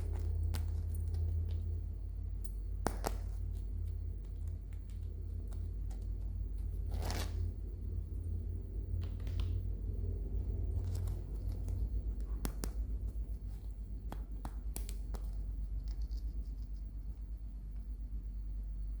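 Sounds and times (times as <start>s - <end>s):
hands handling plastic packaging: 0.0s - 1.8s, 10.6s - 16.9s
low hum: 0.0s - 19.0s.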